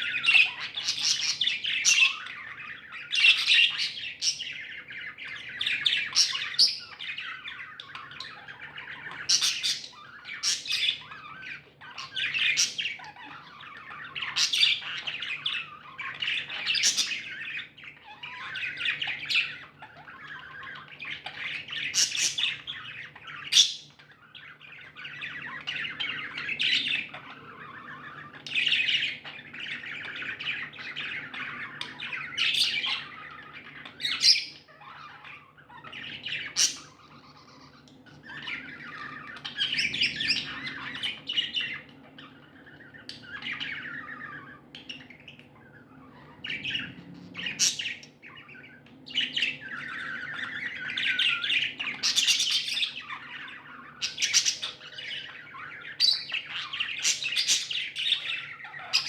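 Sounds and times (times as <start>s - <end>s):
budgerigars chattering: 0.0s - 59.0s
sharp bird calls: 0.0s - 59.0s.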